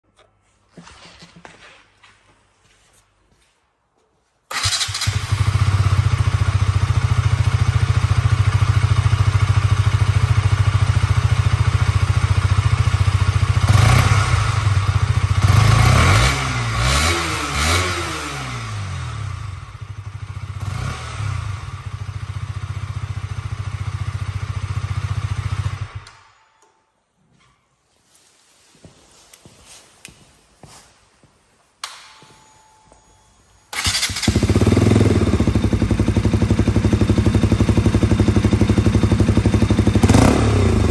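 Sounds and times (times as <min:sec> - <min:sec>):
motorcycle engine idling and revving: 0:04.5 - 0:26.3, 0:33.8 - 0:40.9.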